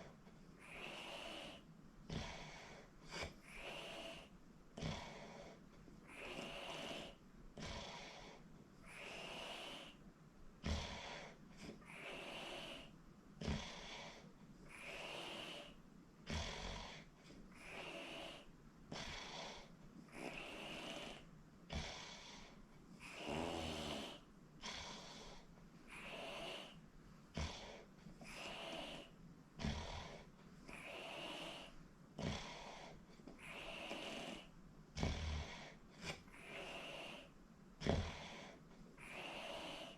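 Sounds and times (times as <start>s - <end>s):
person snoring: 14.7s - 39.9s.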